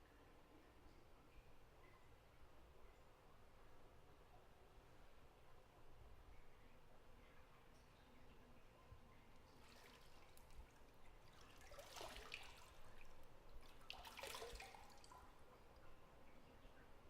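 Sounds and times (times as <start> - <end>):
quiet room hiss: 0.0 - 17.0
water dripping and trickling in tub: 5.1 - 17.0.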